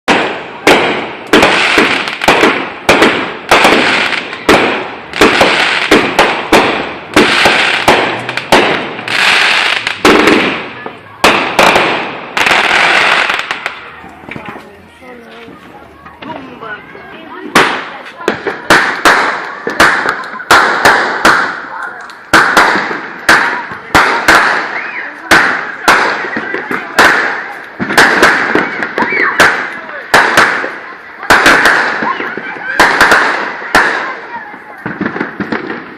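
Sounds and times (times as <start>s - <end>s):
fireworks bangs: 0.0s - 35.9s.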